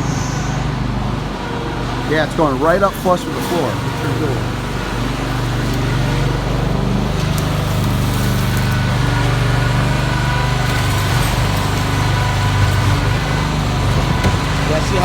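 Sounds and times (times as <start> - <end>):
small gas engine running: 0.0 - 15.0.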